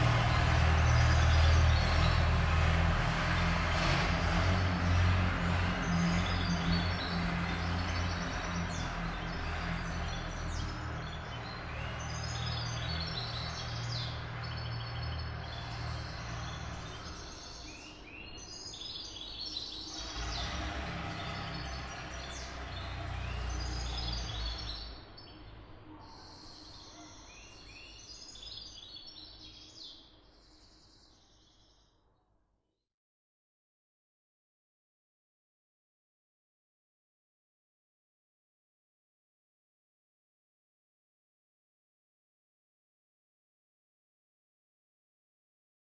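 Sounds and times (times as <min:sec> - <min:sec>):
diesel truck engine rumbling: 0:00.0 - 0:17.6, 0:19.9 - 0:25.3
birds chirping: 0:05.8 - 0:31.9.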